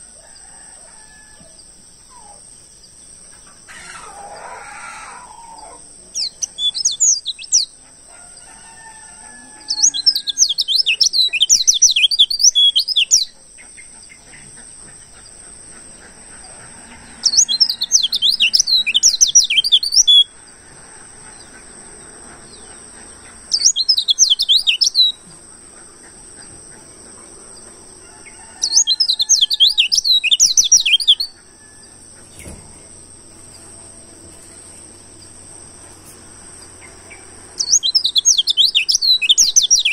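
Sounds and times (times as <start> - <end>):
bird twittering warble: 1.6 - 7.8, 9.6 - 20.4, 21.2 - 27.8, 28.4 - 33.7, 34.3 - 39.9.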